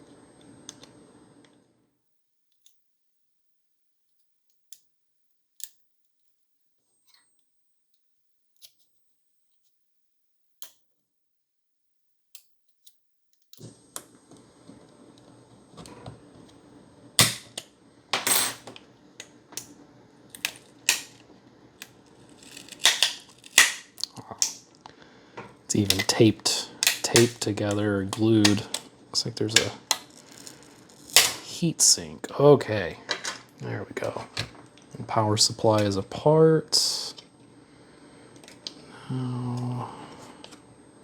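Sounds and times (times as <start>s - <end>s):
plastic case cracking and snapping: 20.4s - 21.2s, 22.4s - 24.6s, 25.8s - 28.8s.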